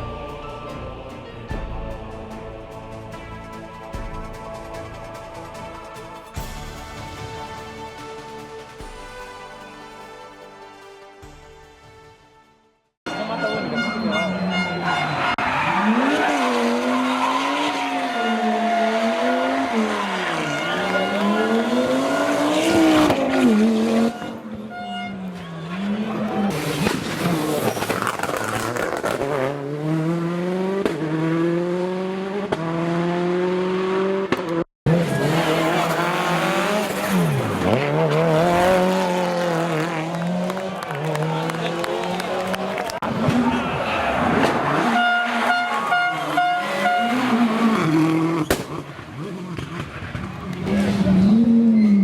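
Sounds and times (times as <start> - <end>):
rally car engine accelerating: 13.2 - 52.0.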